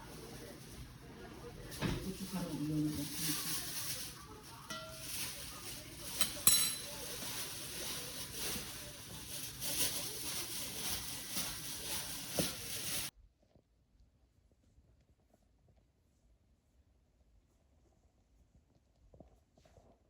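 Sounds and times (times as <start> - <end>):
faint voice: 0.0 - 13.0
tableware clinking: 4.6 - 9.8.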